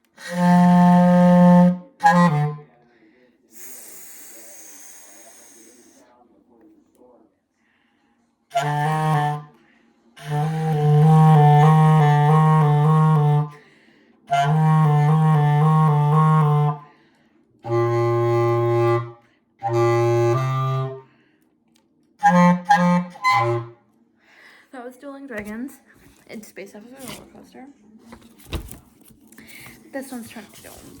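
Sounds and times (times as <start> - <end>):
woodwind instrument playing low notes: 0.2 - 2.7, 8.5 - 9.6, 10.2 - 13.6, 14.3 - 16.9, 17.6 - 21.1, 22.2 - 23.8.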